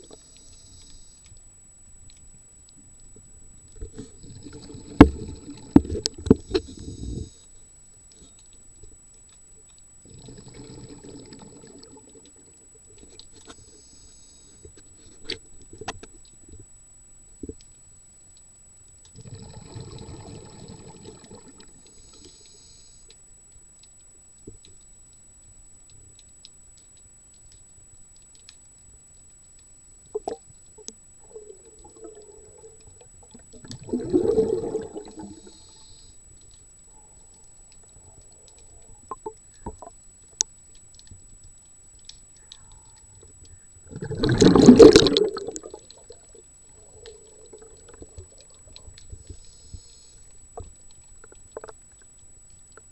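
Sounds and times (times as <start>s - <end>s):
water bubbling and gushing: 4.1s - 7.2s, 10.1s - 12.5s, 19.2s - 21.8s, 31.2s - 35.6s, 43.8s - 49.4s.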